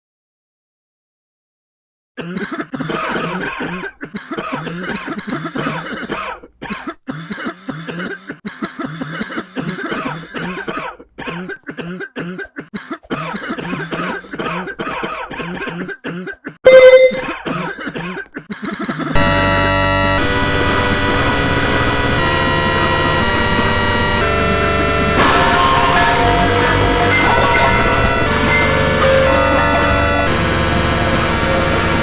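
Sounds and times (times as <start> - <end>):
person coughing: 2.2 - 19.2.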